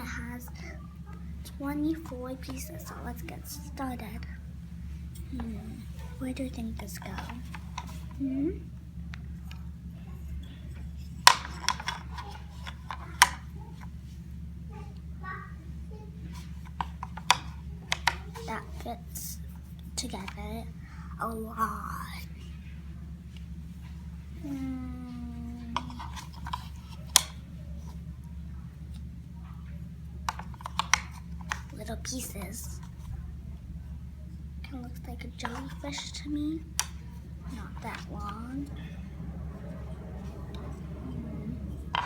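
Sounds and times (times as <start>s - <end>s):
low hum: 0.0s - 42.0s
person humming: 8.2s - 8.7s, 24.4s - 26.0s
puzzle pieces clicking and tapping: 30.3s - 31.7s.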